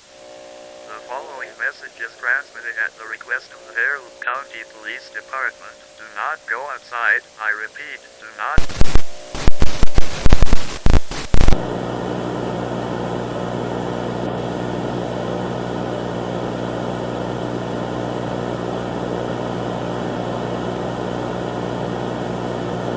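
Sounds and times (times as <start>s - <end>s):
electrical buzz with hiss: 0.0s - 22.9s
spoken alert: 0.9s - 8.8s
harsh loud bursts: 8.6s - 11.6s.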